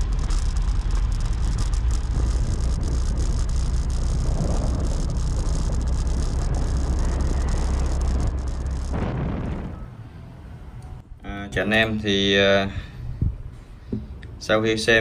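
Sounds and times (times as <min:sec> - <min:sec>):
camera rattle clicking: 0:00.0 - 0:09.0
motorbike engine and road rumble: 0:00.0 - 0:11.2.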